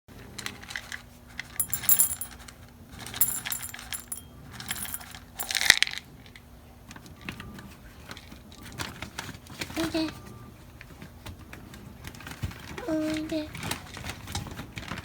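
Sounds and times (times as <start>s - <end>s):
cat kibble rattling: 3.2s - 4.2s.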